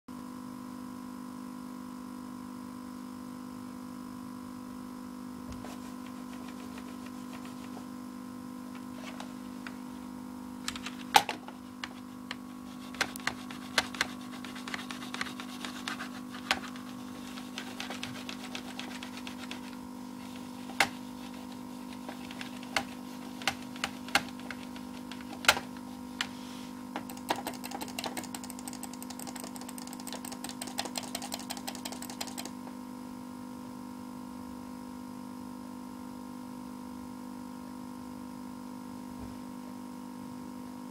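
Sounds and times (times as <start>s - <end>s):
computer buzzing drone: 10.7s - 26.2s, 27.0s - 32.6s
sharp clicks and taps: 10.7s - 26.3s, 27.0s - 32.6s.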